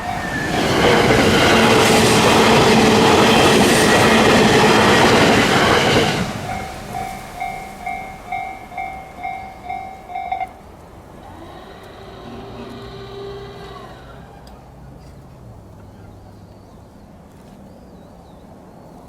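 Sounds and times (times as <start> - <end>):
level-crossing warning bell: 0.0 - 10.8
train rail and wheel noise: 0.0 - 19.0.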